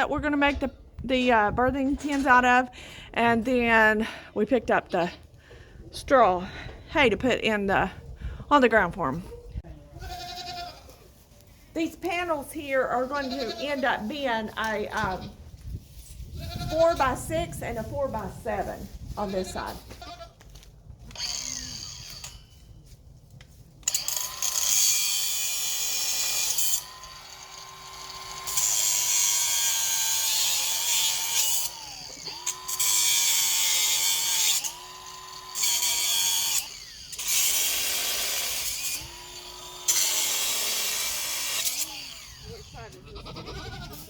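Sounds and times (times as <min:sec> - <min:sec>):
power drill bursts: 0:23.9 - 0:25.1, 0:26.3 - 0:42.5.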